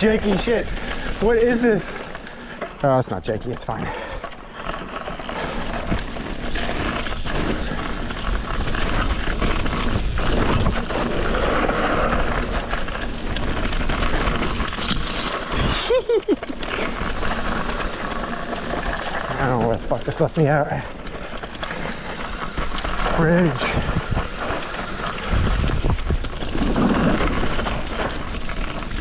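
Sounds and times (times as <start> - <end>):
bike rumble and rattle on dirt: 0.0 - 29.0
wind rushing over microphone: 3.2 - 15.9, 22.2 - 29.0.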